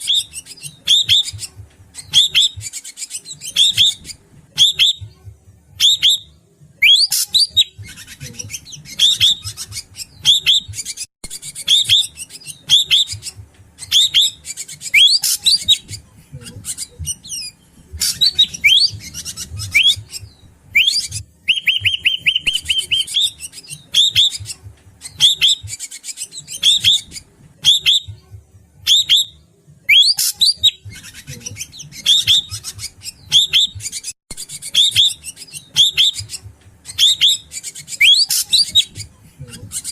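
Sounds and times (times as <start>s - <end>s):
bird sharp hooked whistles: 29.9s - 31.2s, 32.0s - 38.9s.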